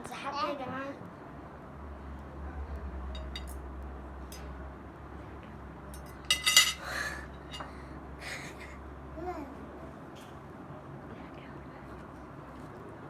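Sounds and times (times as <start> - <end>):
cutlery and dishes clinking: 3.2 - 3.6, 6.0 - 7.7.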